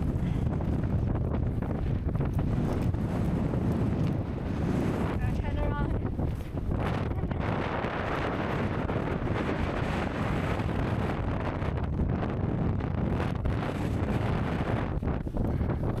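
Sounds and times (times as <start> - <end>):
strong wind on microphone: 0.0 - 16.0.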